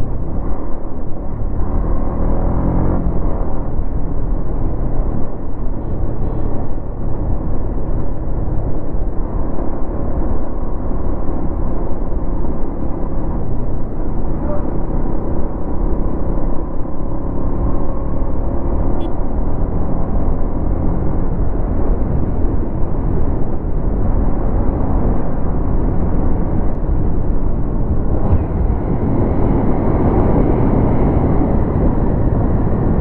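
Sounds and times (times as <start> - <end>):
wind on microphone: 21.2 - 33.0.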